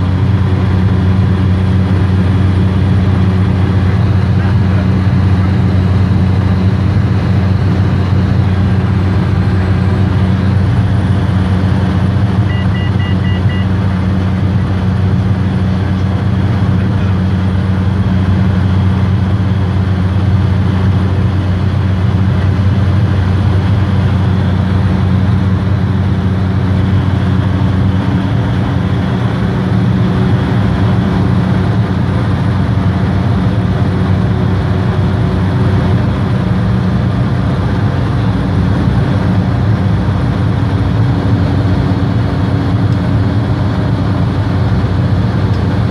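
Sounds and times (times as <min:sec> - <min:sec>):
turboprop aircraft droning: 0:00.0 - 0:45.9
faint electronic beeps: 0:12.5 - 0:13.7.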